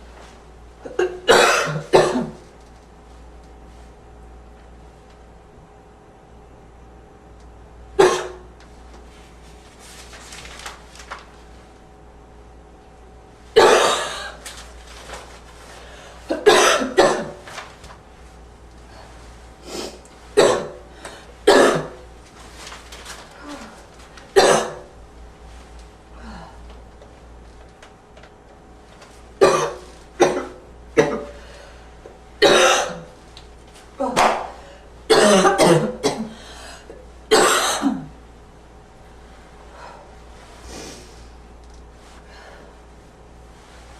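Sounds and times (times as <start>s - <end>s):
person coughing: 0.8s - 2.4s, 8.0s - 8.5s, 13.6s - 14.4s, 16.3s - 17.4s, 19.8s - 20.8s, 21.4s - 22.0s, 24.4s - 24.9s, 29.4s - 31.4s, 32.4s - 33.1s, 35.1s - 36.5s, 37.3s - 38.2s
faint breaths: 42.1s - 42.9s.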